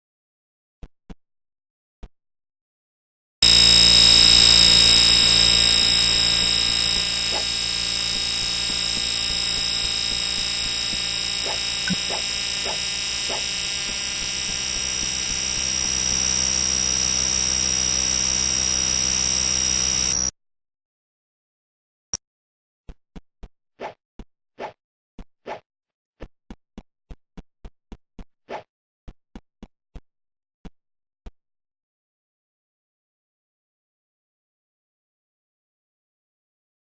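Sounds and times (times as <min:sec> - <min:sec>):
fire alarm sounder high-pitched tone: 0:03.4 - 0:20.3.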